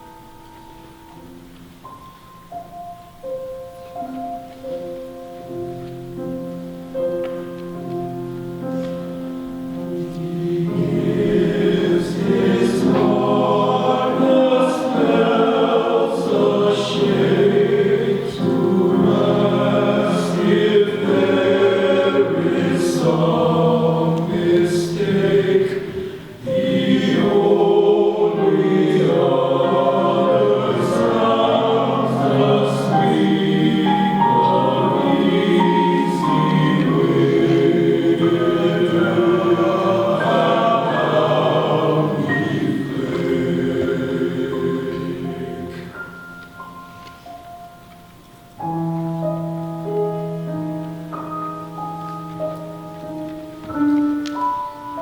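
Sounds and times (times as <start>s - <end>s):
men's chorus singing: 10.0s - 46.0s.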